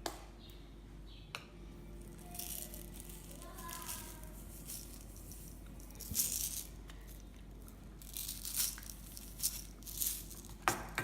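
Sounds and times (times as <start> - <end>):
sprinkles rattling in container: 2.0 - 10.7.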